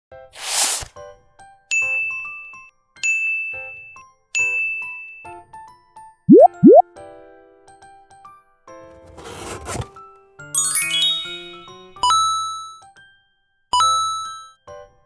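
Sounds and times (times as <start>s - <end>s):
glittering run of chimes: 6.3s - 6.8s
bell-like dings: 10.6s - 11.9s.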